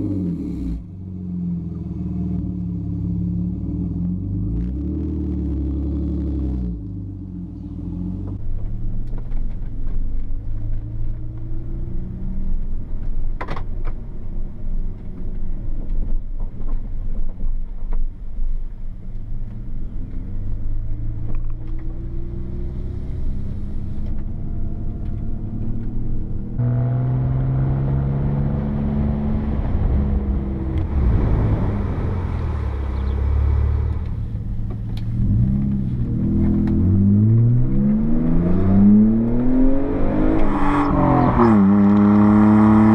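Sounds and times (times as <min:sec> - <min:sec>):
car exhaust revving: 0:22.2 - 0:42.9.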